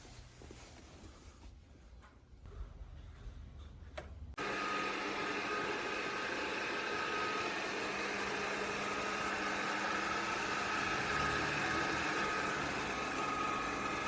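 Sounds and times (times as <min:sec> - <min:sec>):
robot vacuum suction motor: 0:04.4 - 0:14.0.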